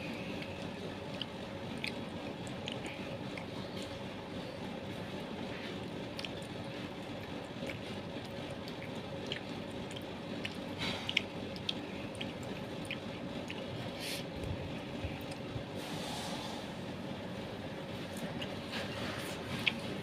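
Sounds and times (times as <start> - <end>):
person chewing food: 0.0 - 4.3, 4.9 - 15.8, 17.9 - 20.0
steady background hum: 0.0 - 20.0
mouth smacks and clicks: 7.2 - 13.7.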